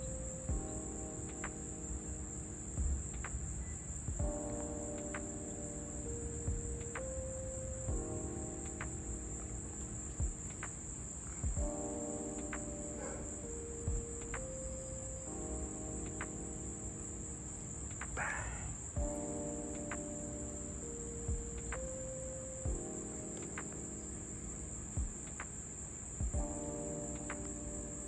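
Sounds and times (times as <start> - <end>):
crickets chirring: 0.0 - 28.0
faint clicks: 17.8 - 18.4, 21.5 - 22.1, 25.2 - 25.7, 27.0 - 27.8.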